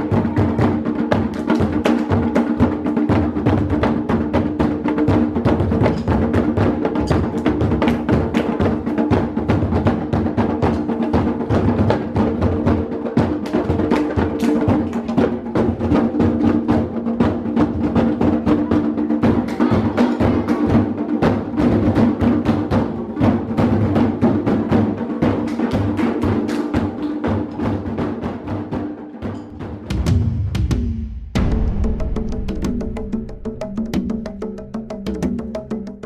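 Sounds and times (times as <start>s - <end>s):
deep drum beats: 0.0s - 36.0s
rapid wooden strikes: 0.2s - 36.0s.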